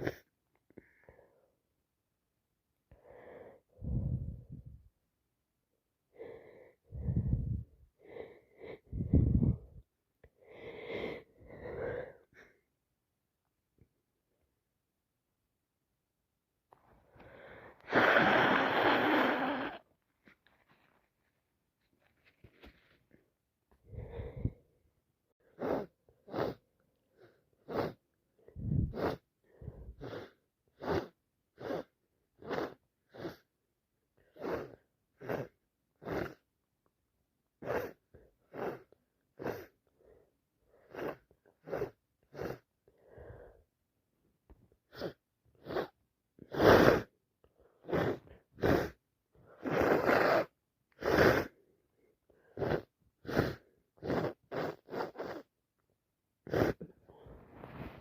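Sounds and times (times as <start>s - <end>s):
person sniffling: 0.0s - 1.0s, 17.2s - 19.8s, 25.5s - 26.6s, 28.6s - 33.5s, 52.5s - 55.5s, 56.4s - 58.0s
nose blowing: 17.8s - 19.8s, 25.5s - 26.6s, 27.2s - 28.0s, 28.6s - 29.3s, 30.0s - 33.5s, 34.3s - 36.4s, 37.6s - 39.8s, 40.8s - 42.7s, 44.9s - 47.1s, 47.8s - 51.6s, 52.4s - 55.5s, 56.4s - 58.0s.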